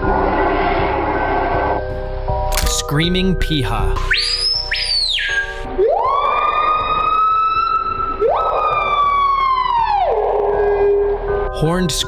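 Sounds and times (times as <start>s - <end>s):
bird whistled calls: 4.0s - 5.6s.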